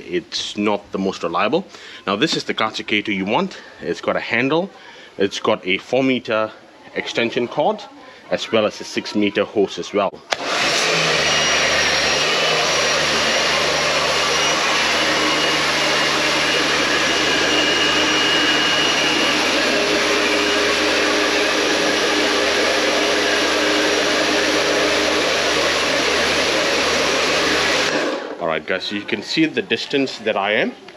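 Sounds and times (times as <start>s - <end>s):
pressure washer motor whining: 10.3s - 28.4s.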